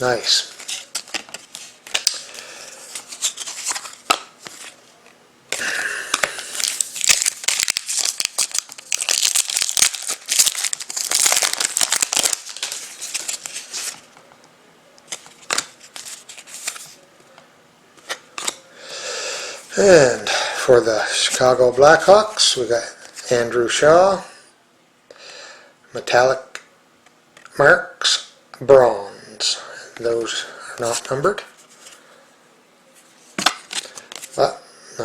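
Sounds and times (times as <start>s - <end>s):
wrapper tearing and crinkling: 6.2s - 14.0s.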